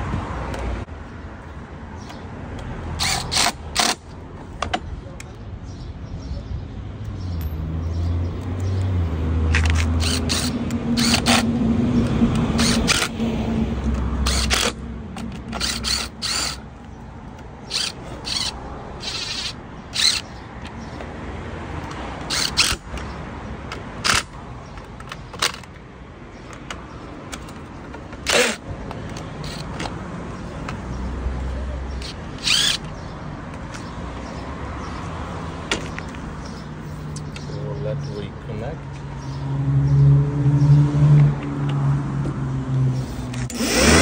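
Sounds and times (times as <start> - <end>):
tools and parts clicking and knocking: 2.0 - 5.4, 9.5 - 13.2, 13.8 - 31.0, 31.9 - 34.3, 35.6 - 37.5.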